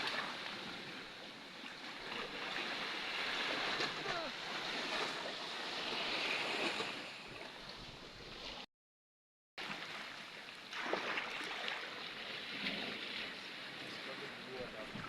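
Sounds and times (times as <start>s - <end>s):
ocean surf on rocks: 0.0s - 8.3s.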